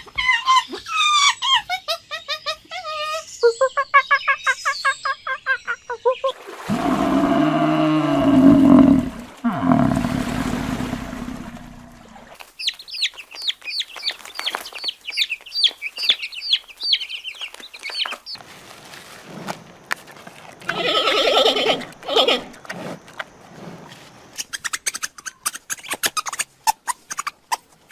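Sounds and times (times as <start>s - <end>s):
loud low animal call: 6.7s - 12.1s.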